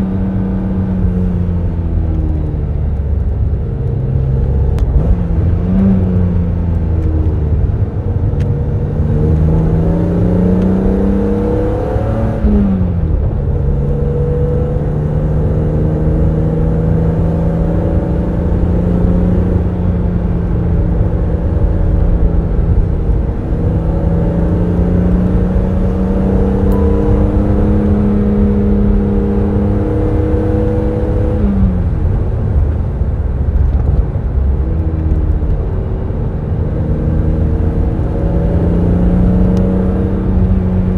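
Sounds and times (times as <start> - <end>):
car engine accelerating: 0.0 - 40.9
wind and road rumble: 0.0 - 40.9.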